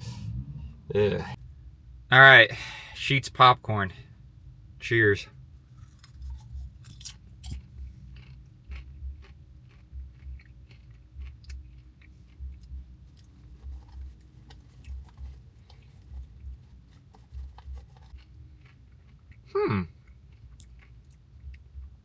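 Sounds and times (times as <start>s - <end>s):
person chewing popcorn: 5.6s - 22.0s.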